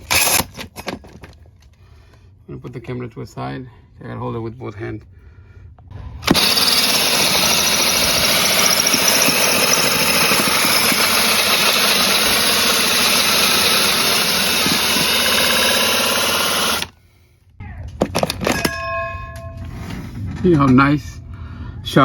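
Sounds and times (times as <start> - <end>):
drill hole saw cutting wood: 6.2 - 17.0.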